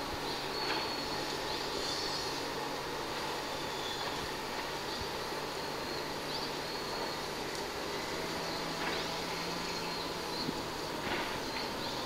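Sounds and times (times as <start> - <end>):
low constant hum: 0.0 - 12.0
high-pitched insect drone: 0.2 - 2.7, 3.3 - 4.2.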